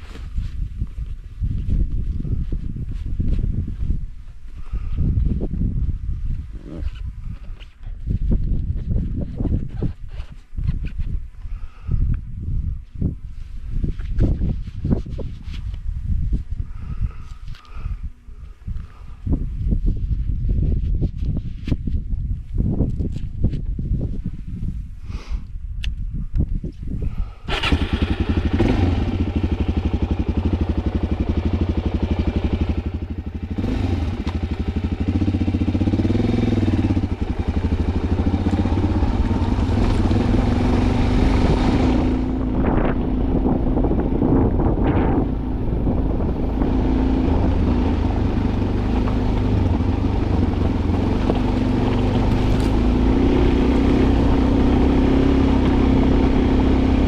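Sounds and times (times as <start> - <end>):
vehicle engine running: 27.5 - 57.0.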